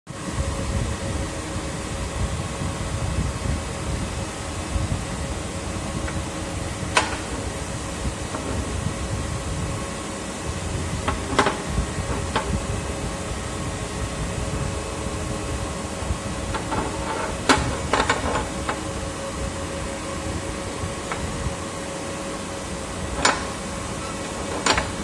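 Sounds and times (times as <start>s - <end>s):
machine running with hum: 0.1s - 25.0s
clicks and knocks: 7.0s - 7.6s, 11.0s - 12.6s, 16.5s - 18.9s, 23.2s - 25.0s.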